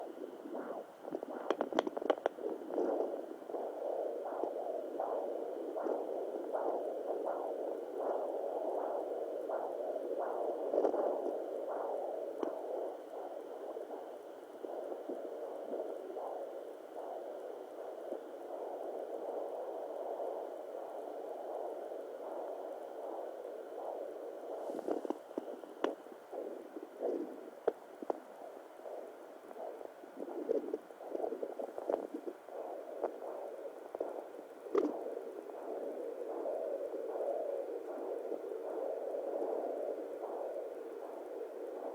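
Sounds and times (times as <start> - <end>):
fetal heartbeat whooshing pulse: 0.0 - 41.9
steady hiss: 0.0 - 41.9
probe scraping and clicking: 0.6 - 3.2, 10.7 - 11.4, 24.6 - 28.4, 30.2 - 33.2, 33.9 - 35.1.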